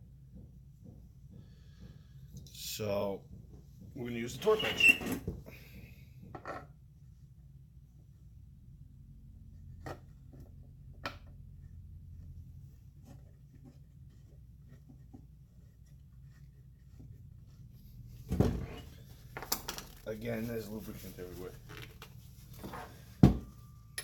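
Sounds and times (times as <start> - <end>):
low steady hum: 6.8 - 24.0
tool knock: 23.2 - 24.0.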